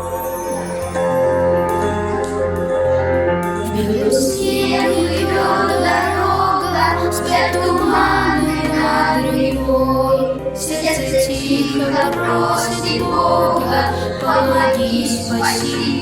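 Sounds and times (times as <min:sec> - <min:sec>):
instrumental accompaniment with bass: 0:00.0 - 0:16.0
voices singing: 0:03.4 - 0:16.0.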